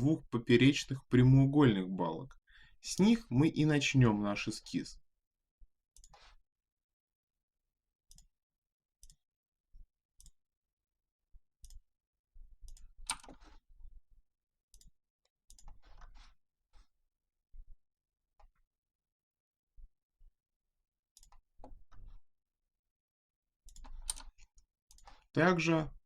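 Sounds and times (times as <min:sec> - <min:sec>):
faint computer mouse clicking: 0:23.7 - 0:25.2.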